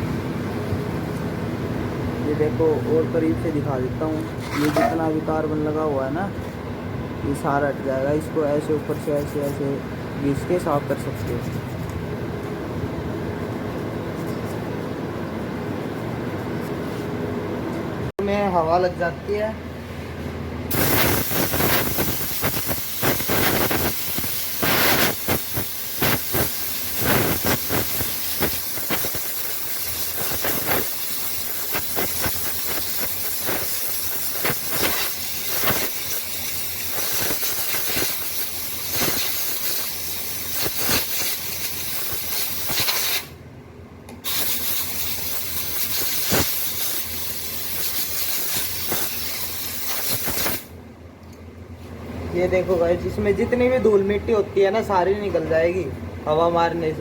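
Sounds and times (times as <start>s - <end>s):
compressed air blow gun hissing: 20.7s - 43.3s, 44.2s - 50.7s.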